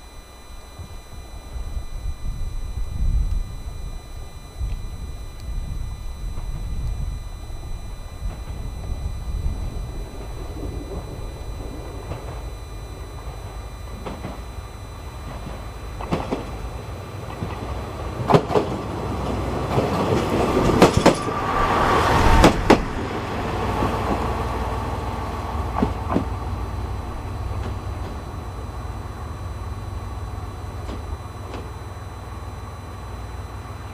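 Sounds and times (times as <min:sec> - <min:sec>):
diesel railcar rumbling past: 0:15.3 - 0:28.4
wheels clacking over rail joints: 0:17.2 - 0:24.7.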